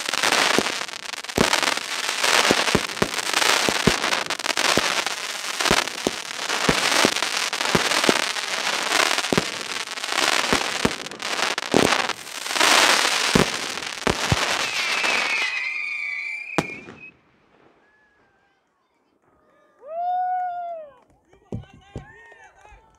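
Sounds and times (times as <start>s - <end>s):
firework crackling: 0.0s - 18.0s
firework whistling: 0.0s - 18.1s
firework bangs: 0.0s - 18.3s.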